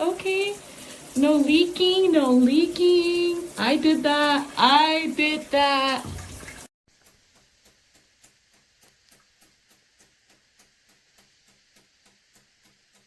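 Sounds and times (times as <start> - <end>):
shower water spraying: 0.0 - 13.0
faint even ticking: 6.9 - 13.0.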